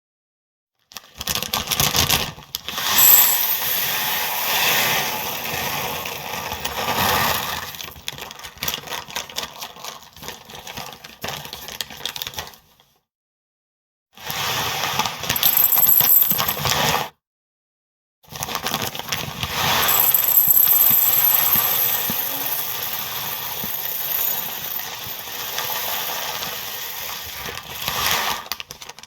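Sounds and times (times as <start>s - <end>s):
dry cereal pouring and rattling: 3.0s - 6.0s, 19.9s - 27.1s.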